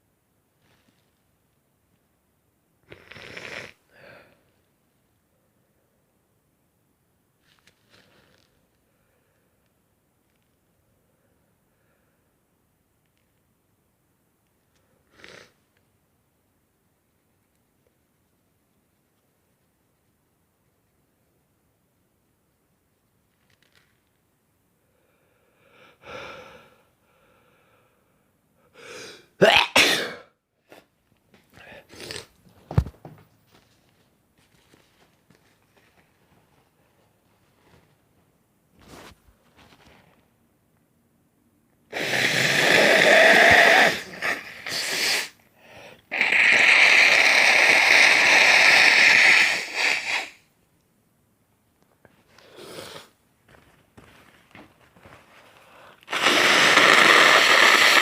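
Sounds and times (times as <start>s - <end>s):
man blowing nose: 2.9s - 4.3s, 15.1s - 15.6s, 28.8s - 30.2s, 31.9s - 32.3s, 41.9s - 50.5s, 52.4s - 53.1s, 55.8s - 58.0s.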